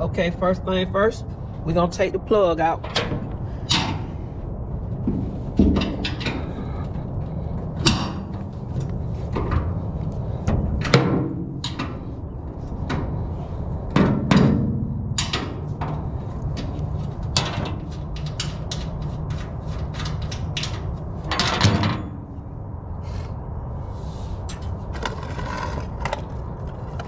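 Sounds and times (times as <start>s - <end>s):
steady low hum: 0.0s - 27.0s
loud metal clunks: 2.8s - 4.2s, 7.8s - 8.5s, 13.9s - 18.8s, 20.2s - 22.4s
clicks and knocks of metal fittings: 15.2s - 21.9s.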